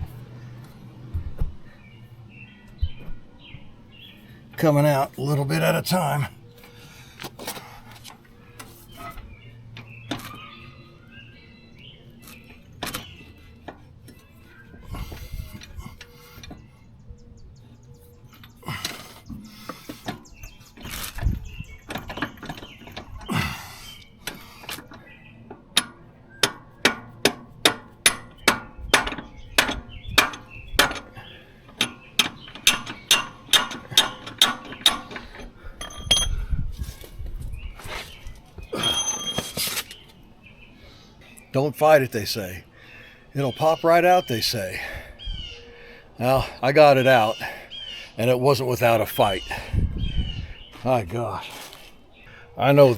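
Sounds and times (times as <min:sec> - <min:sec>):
metal knocks and scraping: 0:18.2 - 0:23.3, 0:24.3 - 0:37.2, 0:37.8 - 0:40.0
hammer striking metal axle: 0:25.8 - 0:31.1, 0:31.8 - 0:36.4.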